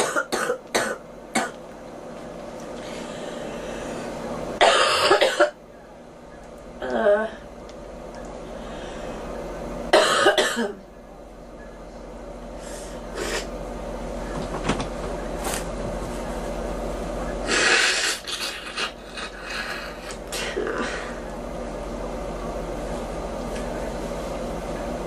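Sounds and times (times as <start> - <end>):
girl coughing: 0.0 - 1.6, 4.6 - 5.6, 9.9 - 10.8.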